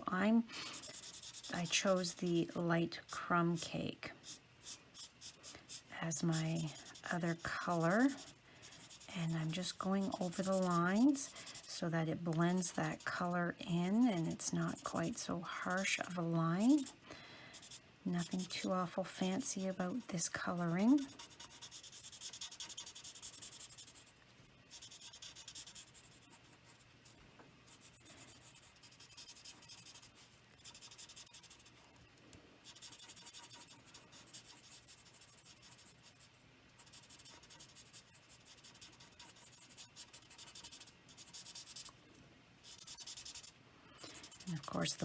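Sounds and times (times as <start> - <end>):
marker tip scratching on paper: 0.7 - 3.2, 4.2 - 11.7, 15.7 - 17.0, 17.6 - 24.1, 24.7 - 26.8, 27.7 - 32.0, 32.6 - 41.9, 42.6 - 45.0.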